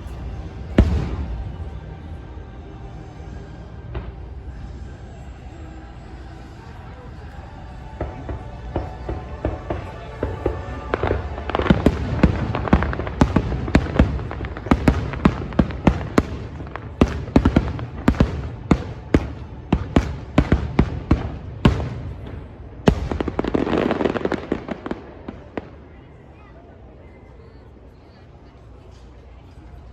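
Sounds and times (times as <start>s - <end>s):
fireworks crackling: 0.0s - 2.2s, 3.8s - 26.1s
music: 0.0s - 25.9s
fireworks bangs and booms: 0.1s - 1.8s, 7.8s - 26.1s.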